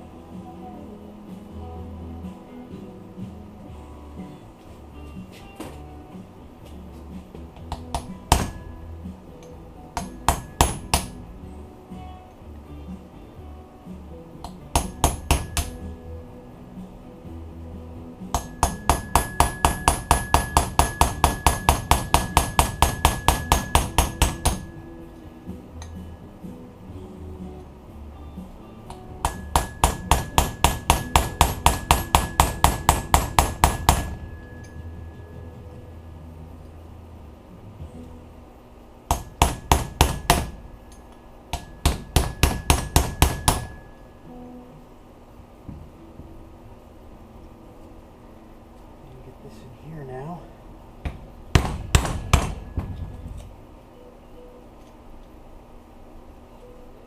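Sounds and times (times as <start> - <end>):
hammer blows on metal tool: 7.6 - 11.3, 14.4 - 16.2, 18.3 - 26.6, 28.9 - 36.0.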